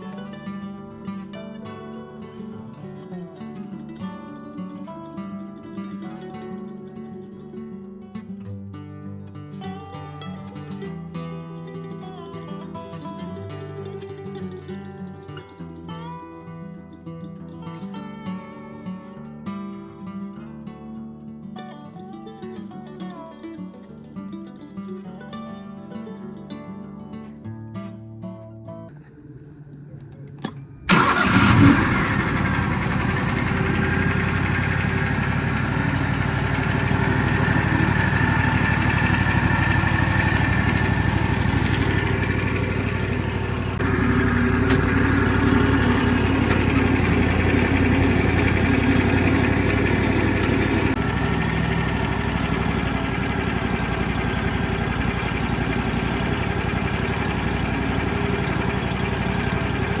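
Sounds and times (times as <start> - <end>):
sawmill engine running: 30.9 - 60.0.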